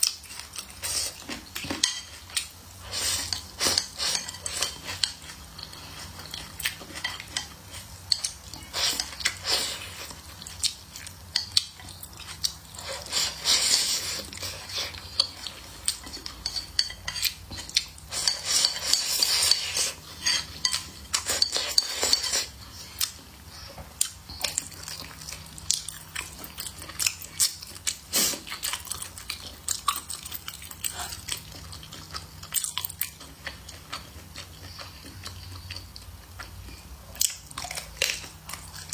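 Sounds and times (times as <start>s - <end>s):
chewing and crunching food: 0.0s - 38.9s
utensils clicking against dishes: 15.2s - 22.5s.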